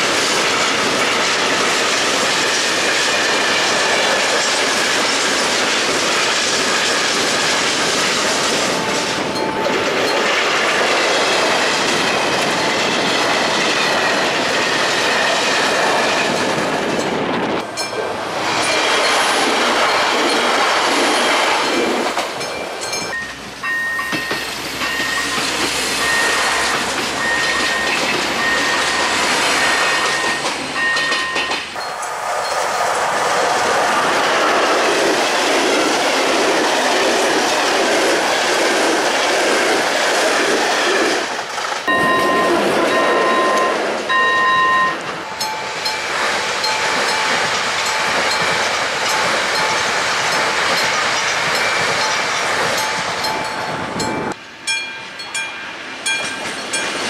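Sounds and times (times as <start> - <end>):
train wheels clattering: 0.0 - 57.0
crossing warning beeps: 8.7 - 10.2, 22.4 - 32.6, 41.9 - 46.0.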